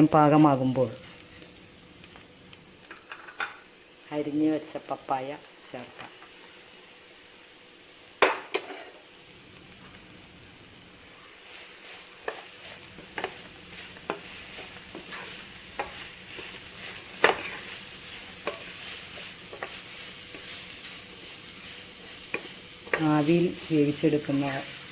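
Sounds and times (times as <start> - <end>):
frying sizzle: 0.0 - 24.9
spoon scraping and knocking pan: 8.2 - 9.0, 11.9 - 23.2.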